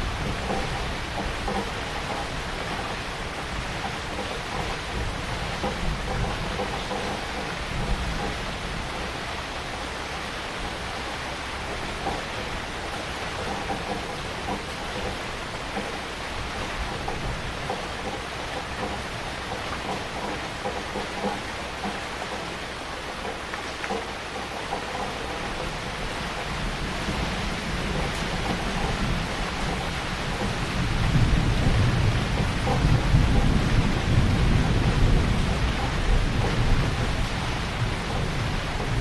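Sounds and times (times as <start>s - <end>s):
heavy rain falling: 0.0s - 39.0s
low rumble of thunder: 24.8s - 39.0s.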